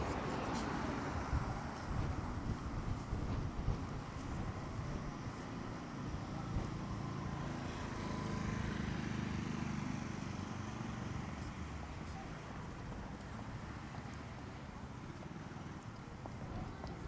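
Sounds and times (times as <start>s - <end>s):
passing traffic engine hum: 0.0s - 3.2s, 4.2s - 13.0s.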